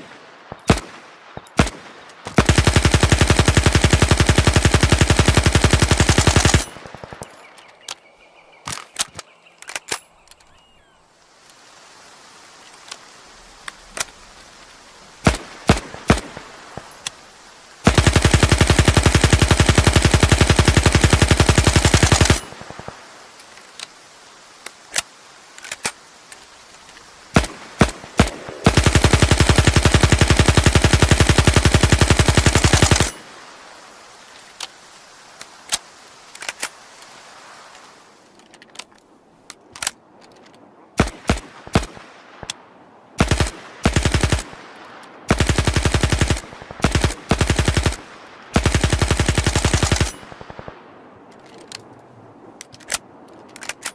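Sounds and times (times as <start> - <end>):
submachine gun single shots: 0.0 - 7.4, 15.2 - 17.1, 17.8 - 23.0, 27.4 - 33.2, 45.3 - 50.8
submachine gun full-auto bursts: 1.6 - 6.9, 17.8 - 22.8, 27.4 - 33.2, 43.2 - 44.5, 45.3 - 50.6.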